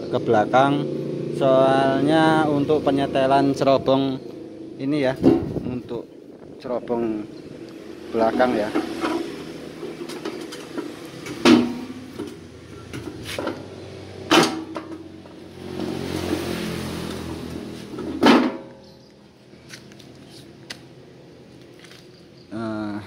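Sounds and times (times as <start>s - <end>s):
sharp metallic knocks with ring: 11.4s - 12.0s.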